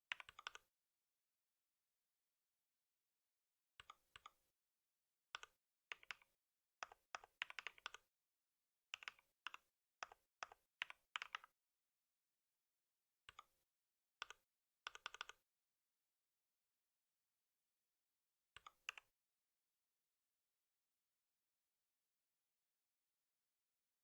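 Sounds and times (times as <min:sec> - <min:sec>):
typing on computer keyboard: 0:00.1 - 0:00.7, 0:05.4 - 0:08.0, 0:09.0 - 0:11.5, 0:14.2 - 0:15.4.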